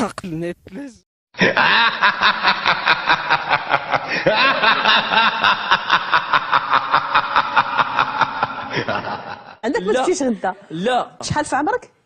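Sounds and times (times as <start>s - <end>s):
person laughing hard: 1.4s - 9.6s.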